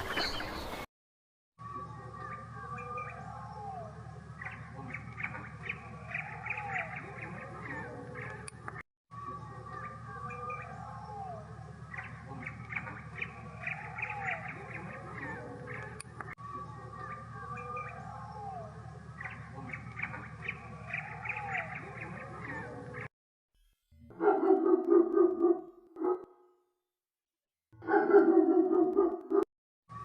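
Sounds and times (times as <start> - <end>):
birds squawking and chirping: 0.0 - 0.9, 1.8 - 23.1.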